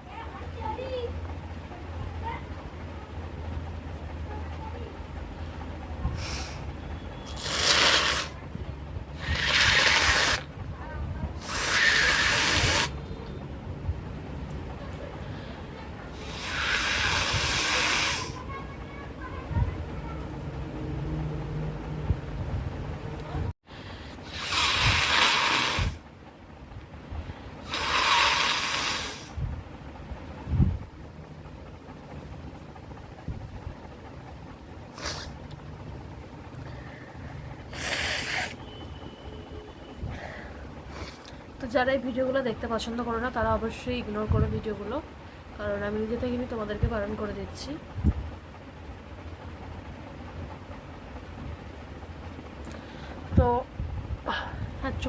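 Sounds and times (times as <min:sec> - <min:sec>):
person blowing nose: 0:07.3 - 0:08.4, 0:09.2 - 0:10.5, 0:11.4 - 0:13.0, 0:16.2 - 0:18.4, 0:24.3 - 0:26.0, 0:27.6 - 0:29.3, 0:35.0 - 0:35.3, 0:37.7 - 0:38.6.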